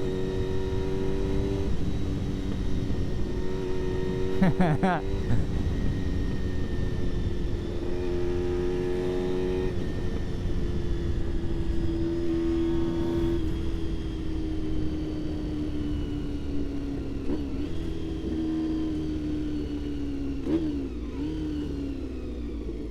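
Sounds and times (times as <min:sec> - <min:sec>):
motorcycle engine at high revs: 0:00.0 - 0:22.9.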